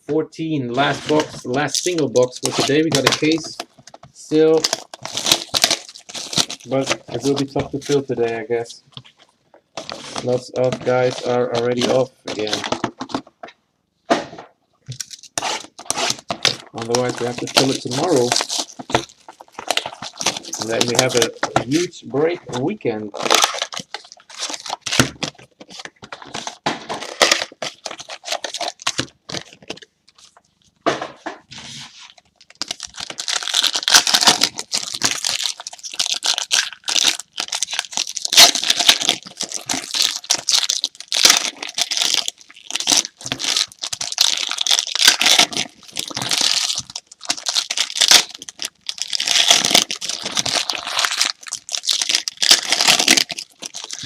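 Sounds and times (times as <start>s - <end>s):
packaging tearing and crinkling: 0.8s - 8.4s, 9.8s - 13.2s, 14.9s - 22.0s, 22.6s - 30.4s, 31.6s - 54.0s.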